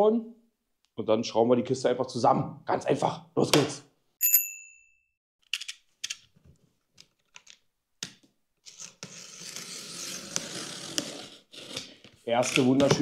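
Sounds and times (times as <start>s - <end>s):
scrapes and knocks on box: 12.6s - 13.0s.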